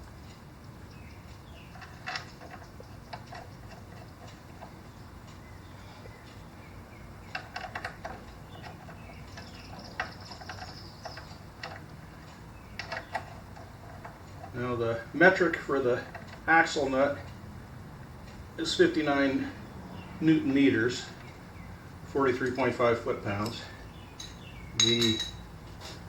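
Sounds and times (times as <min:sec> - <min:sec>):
metallic clicks of tools and bolts: 0:00.2 - 0:04.7, 0:07.3 - 0:14.6, 0:24.2 - 0:25.5.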